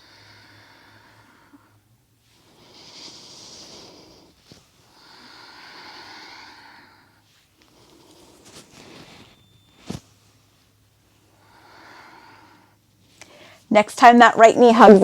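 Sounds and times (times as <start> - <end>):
woman breathing: 0.0 - 9.3, 11.2 - 13.7.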